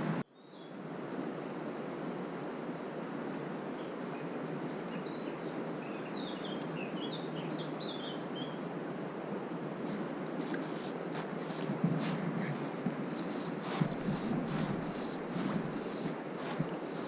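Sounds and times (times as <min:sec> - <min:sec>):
songbird chirping: 0:03.7 - 0:08.6, 0:10.4 - 0:17.0.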